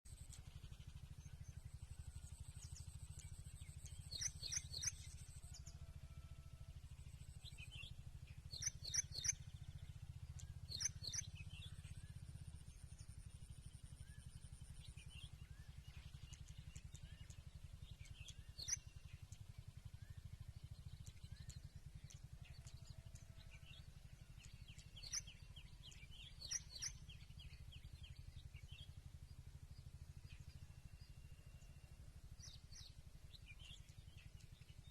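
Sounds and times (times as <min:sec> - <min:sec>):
steady low hum: 0:00.1 - 0:34.9
birds chirping: 0:07.6 - 0:12.0, 0:14.6 - 0:29.2.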